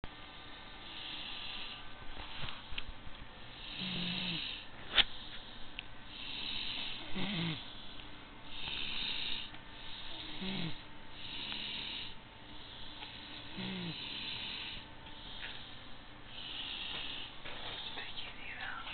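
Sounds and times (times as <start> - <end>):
person snoring: 3.5 - 4.6, 6.1 - 7.8, 8.5 - 12.2, 12.8 - 15.5.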